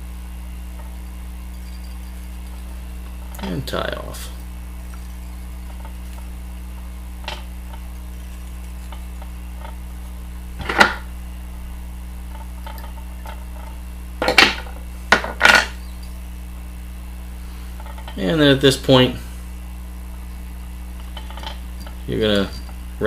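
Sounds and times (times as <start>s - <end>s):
low electrical hum: 0.0s - 23.0s
scratchy handling sounds: 0.7s - 10.7s.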